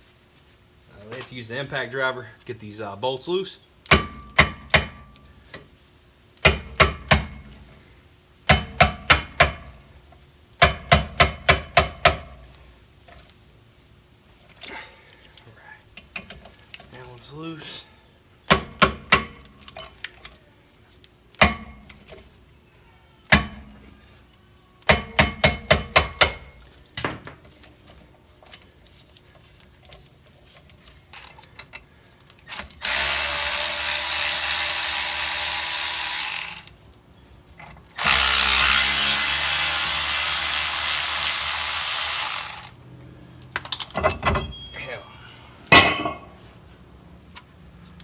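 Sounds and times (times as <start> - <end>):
power tool cleaning rust: 32.8 - 36.7, 38.0 - 42.7.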